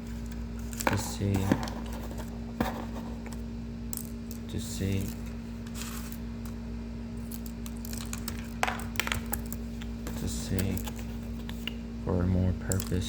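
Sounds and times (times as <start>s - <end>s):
steady low hum: 0.0s - 13.0s
small objects clicking and tapping: 3.2s - 5.2s, 7.2s - 11.8s, 12.7s - 13.0s.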